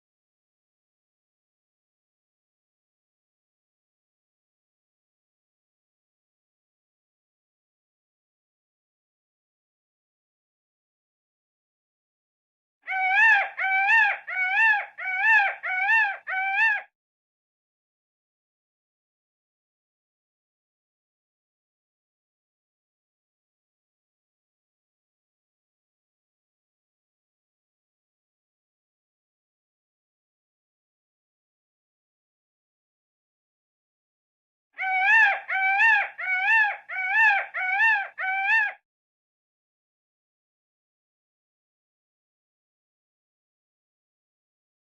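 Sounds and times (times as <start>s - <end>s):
peacock calling: 12.9s - 16.9s, 34.8s - 38.8s.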